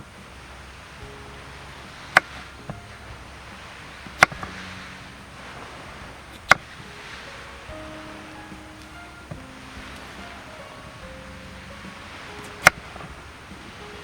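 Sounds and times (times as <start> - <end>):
sharp chopping strikes: 4.1 - 4.7.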